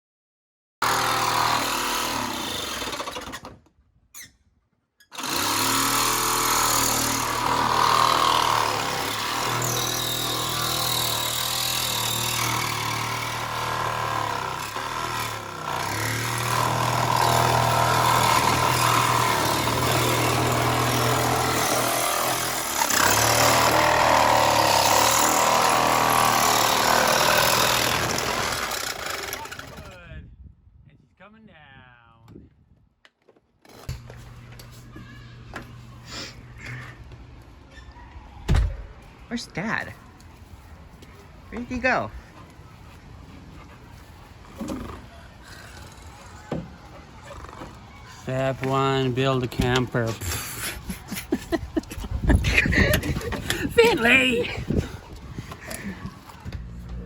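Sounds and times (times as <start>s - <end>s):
power tool humming: 0.8s - 3.4s, 5.2s - 29.8s.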